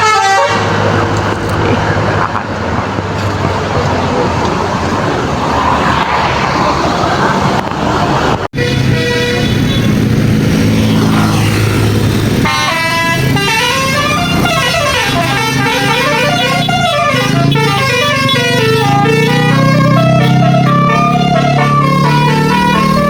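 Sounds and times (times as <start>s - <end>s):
multi-tone musical bus horn: 0.0s - 0.9s, 8.6s - 10.8s, 12.3s - 23.0s
bus engine running: 0.0s - 23.0s.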